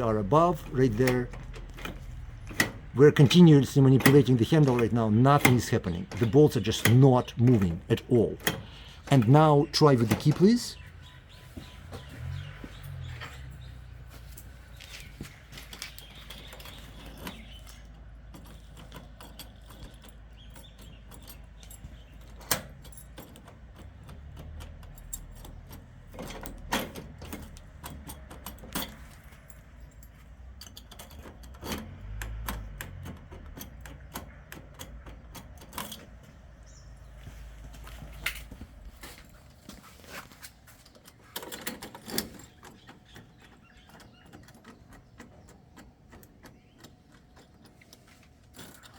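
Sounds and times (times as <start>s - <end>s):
lock mechanism clicking: 0.0s - 10.9s, 15.6s - 39.7s, 40.4s - 48.9s
keys jangling on a ring: 12.8s - 36.8s, 48.2s - 48.9s.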